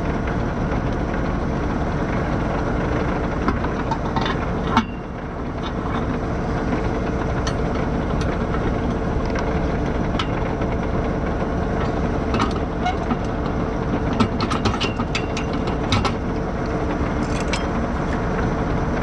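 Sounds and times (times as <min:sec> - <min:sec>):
tractor engine idling: 0:00.0 - 0:19.0
metallic clicks and clanks: 0:17.2 - 0:18.2.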